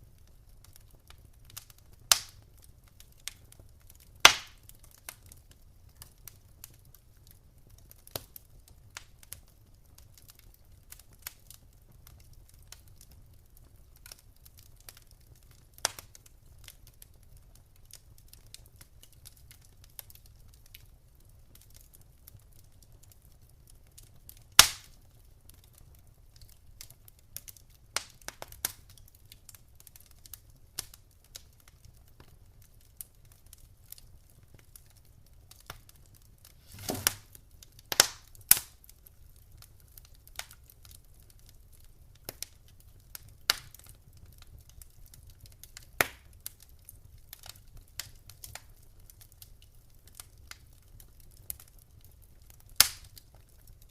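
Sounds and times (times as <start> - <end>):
wood fire crackling: 0.0 - 53.9
short hiss: 36.6 - 37.2.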